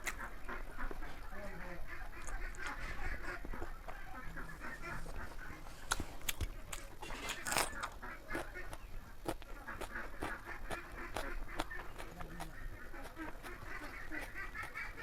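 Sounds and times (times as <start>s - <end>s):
chewing and lip-smacking: 0.0s - 15.0s
sharp mouth clicks: 5.8s - 14.9s.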